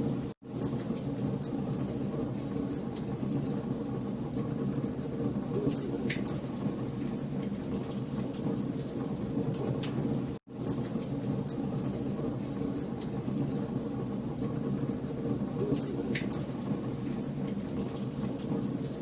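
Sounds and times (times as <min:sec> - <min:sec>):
low rumble of flames: 0:00.0 - 0:19.0
wood fire crackling and popping: 0:04.3 - 0:19.0.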